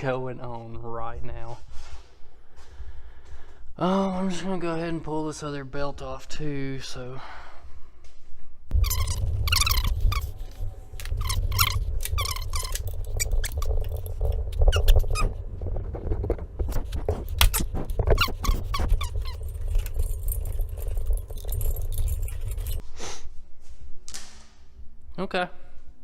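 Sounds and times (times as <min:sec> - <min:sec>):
high squeaks and chirps: 0:08.7 - 0:15.4, 0:16.8 - 0:22.8
car engine rumbling: 0:08.7 - 0:22.8.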